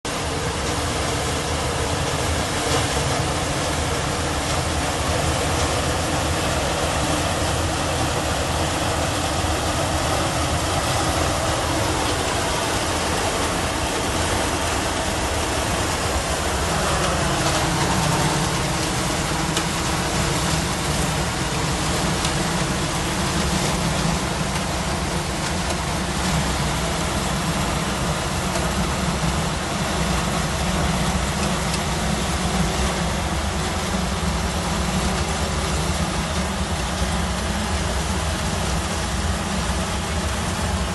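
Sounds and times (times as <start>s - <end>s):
combine harvester engine and threshing: 0.0s - 40.9s
deeper steady note: 3.0s - 34.5s.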